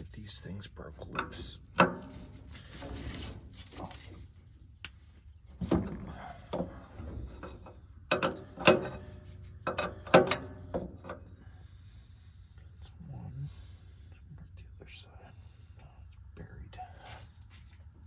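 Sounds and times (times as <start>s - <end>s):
wrenches clanking on metal: 1.0s - 4.2s, 5.6s - 11.5s.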